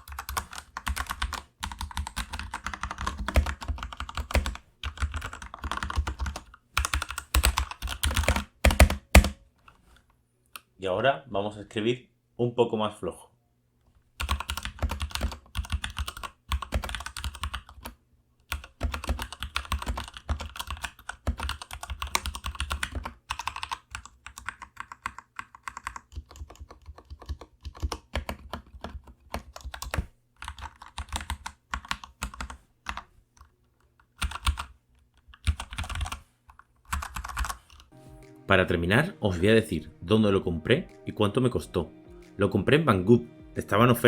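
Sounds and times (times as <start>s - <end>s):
mechanical keyboard typing: 0.0s - 9.4s, 14.2s - 33.0s, 34.0s - 37.9s.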